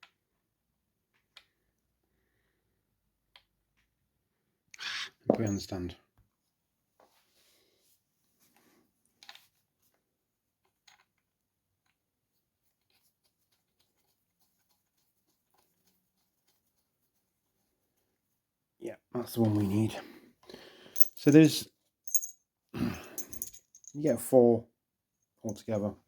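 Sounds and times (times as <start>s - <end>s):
metal tubes clicking and tapping: 21.0s - 22.4s, 23.2s - 24.0s.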